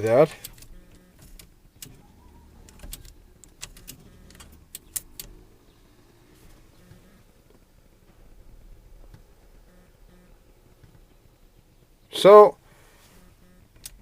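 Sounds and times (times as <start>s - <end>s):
small parts clicking and tapping: 2.7s - 5.4s.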